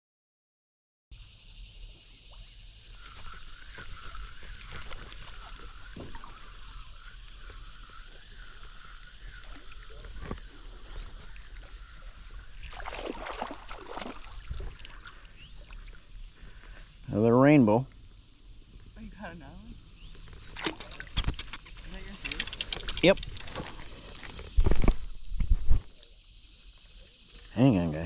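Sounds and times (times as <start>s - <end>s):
river water running: 2.9s - 17.1s, 19.8s - 24.7s
water splashing: 3.0s - 16.1s, 20.4s - 24.4s.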